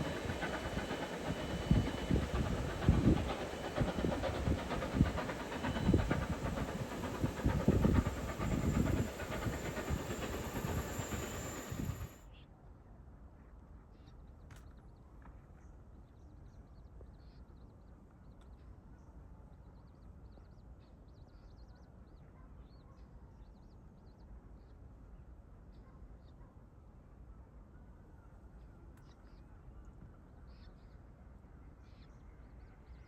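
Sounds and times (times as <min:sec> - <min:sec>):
low wind rumble: 0:00.0 - 0:12.1.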